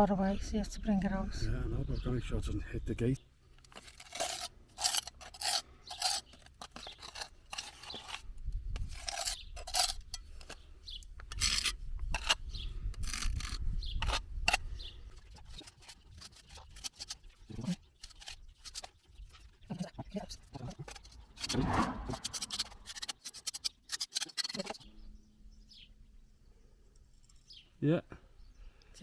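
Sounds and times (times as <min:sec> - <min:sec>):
scraping and rubbing: 0:03.6 - 0:24.9
low rumble: 0:21.5 - 0:22.5.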